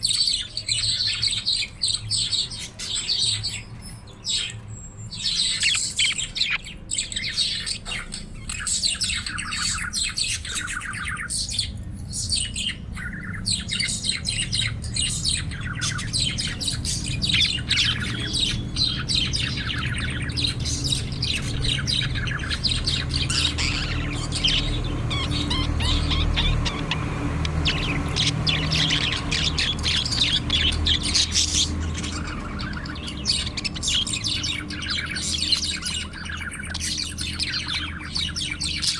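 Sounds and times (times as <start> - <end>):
budgerigars chirping: 0.0 - 38.9
low steady rumble: 8.4 - 38.8.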